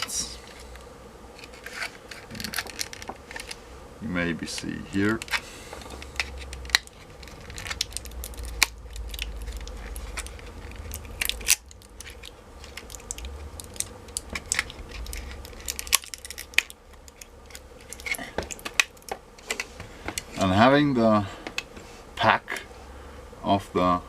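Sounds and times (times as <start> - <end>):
hard plastic cracking and clicking: 1.4 - 3.6, 4.4 - 20.5.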